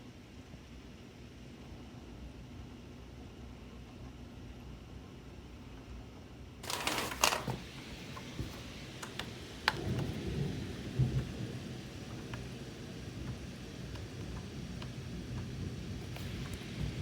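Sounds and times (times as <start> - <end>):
steady rain: 6.6 - 17.0
thunder crack and rumble: 8.4 - 17.0.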